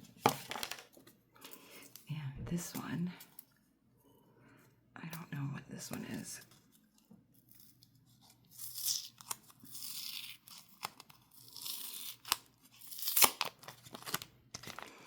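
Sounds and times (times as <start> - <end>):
packaging crinkling and rustling: 0.0 - 1.9, 12.1 - 15.0.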